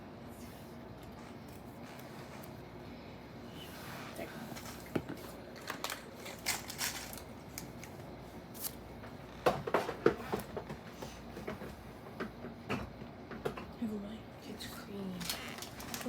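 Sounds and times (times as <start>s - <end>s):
food packaging rustling and clicking: 4.5s - 12.4s, 15.2s - 16.0s.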